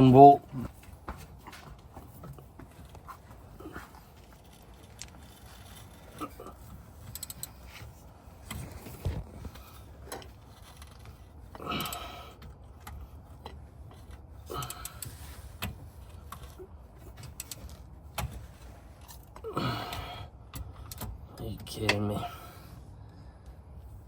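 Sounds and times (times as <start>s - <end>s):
creaking scrapes: 1.5s - 11.5s.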